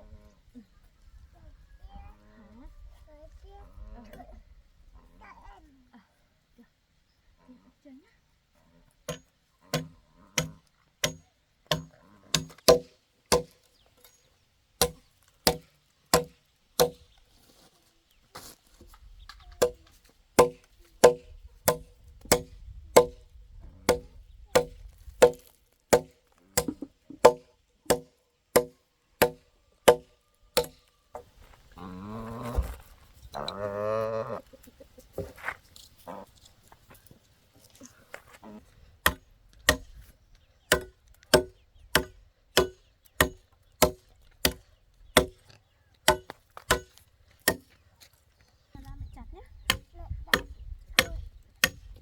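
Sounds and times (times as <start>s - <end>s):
blade chopping into wood: 9.8s - 13.6s, 14.8s - 17.0s, 19.6s - 19.8s, 20.4s - 23.2s, 23.9s - 30.8s, 39.0s - 40.0s, 40.7s - 45.4s, 46.0s - 47.7s, 49.7s - 52.0s.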